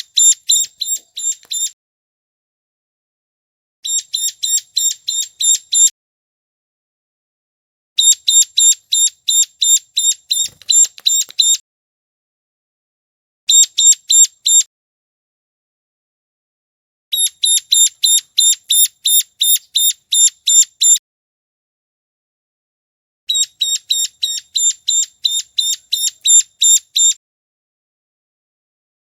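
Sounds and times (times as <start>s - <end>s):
bird calling sharp chip notes: 0.0s - 1.8s, 8.0s - 11.6s, 17.2s - 21.0s, 23.3s - 27.2s.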